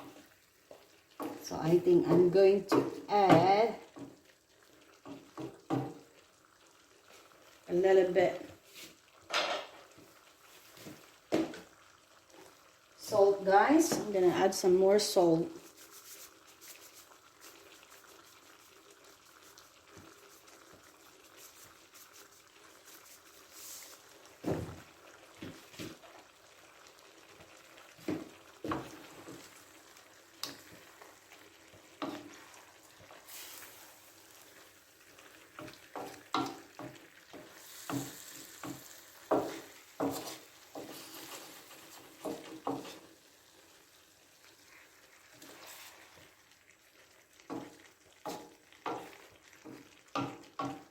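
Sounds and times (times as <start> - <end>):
food frying in a pan: 0.0 - 50.9
spatula knocking against pan: 50.1 - 50.9.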